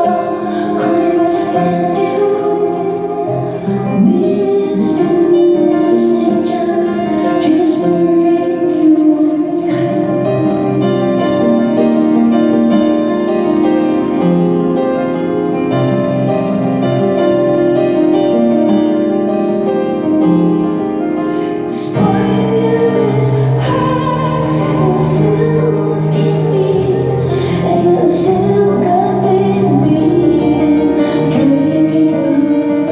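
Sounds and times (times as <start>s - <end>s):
woman singing: 0.0s - 11.5s, 21.3s - 32.9s
piano and keyboards: 0.0s - 32.9s.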